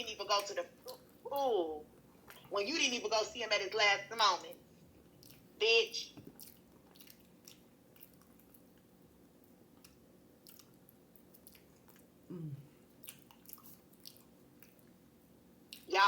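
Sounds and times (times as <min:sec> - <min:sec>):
low hum from person: 0:00.0 - 0:16.0
person chewing: 0:00.8 - 0:01.2, 0:05.0 - 0:05.5, 0:06.2 - 0:15.0, 0:15.7 - 0:15.9.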